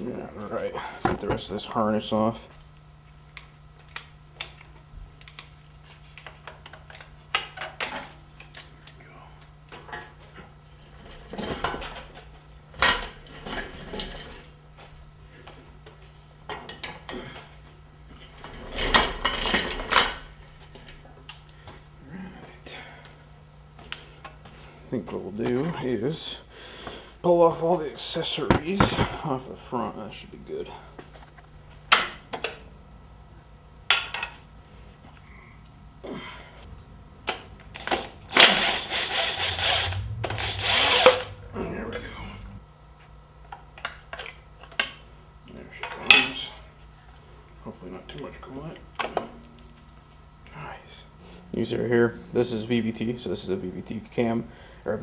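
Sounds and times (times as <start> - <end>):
steady low hum: 32.6 - 43.3.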